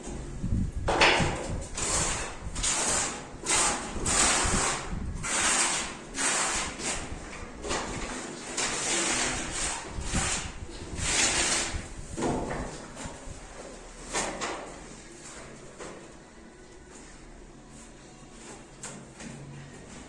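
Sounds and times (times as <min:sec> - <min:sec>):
hand tool scraping hard surface: 0:01.7 - 0:12.3.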